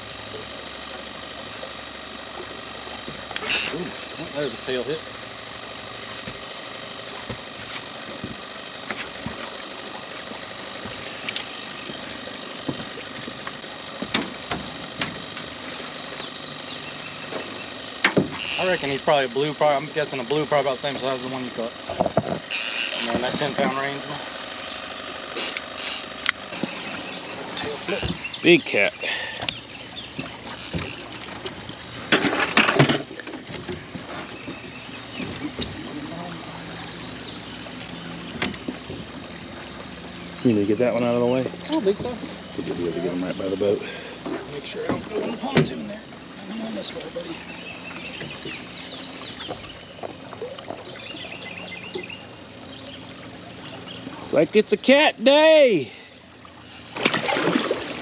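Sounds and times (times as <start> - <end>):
boat motor running: 0.0 - 58.0
sharp clicks and knocks: 10.8 - 15.6
fish splashing at the surface: 56.4 - 58.0.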